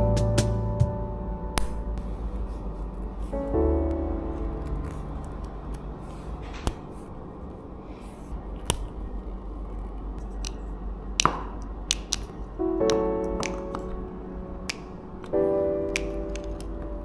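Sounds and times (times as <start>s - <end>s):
low steady hum: 0.0s - 17.0s
plastic bricks clicking: 11.2s - 13.6s.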